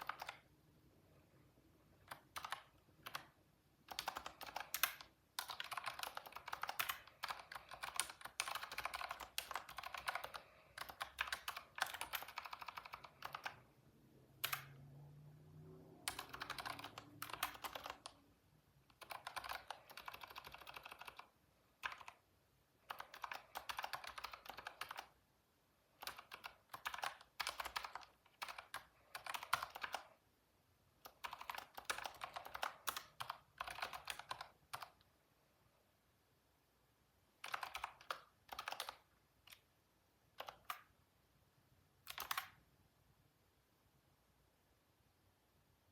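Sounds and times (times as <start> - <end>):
computer keyboard typing: 0.0 - 0.5, 2.0 - 13.7, 14.4 - 14.9, 16.0 - 18.2, 18.8 - 25.2, 25.9 - 30.2, 31.0 - 35.1, 37.4 - 39.7, 40.3 - 41.0, 42.0 - 42.6.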